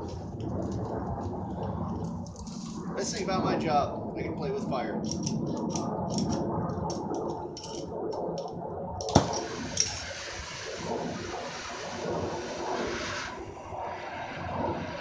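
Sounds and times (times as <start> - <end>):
crackling ticks: 0.0 - 2.5, 5.0 - 8.6
torch flame rushing: 0.0 - 15.0
sharp pop: 9.0 - 10.0
high steady hiss: 9.1 - 14.1.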